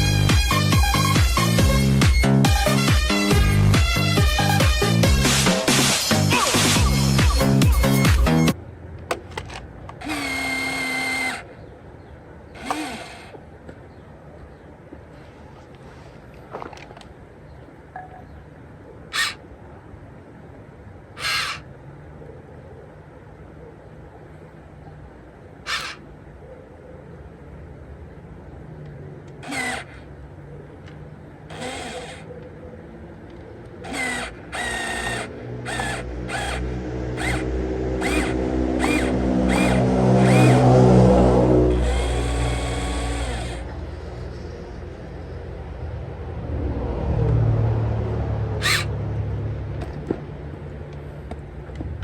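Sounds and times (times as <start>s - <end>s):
electric motors whirring: 9.3s - 11.6s, 12.5s - 13.4s, 19.1s - 19.4s, 21.2s - 21.7s, 25.7s - 26.0s, 29.3s - 30.1s, 31.5s - 32.3s, 33.7s - 44.2s, 48.6s - 48.9s.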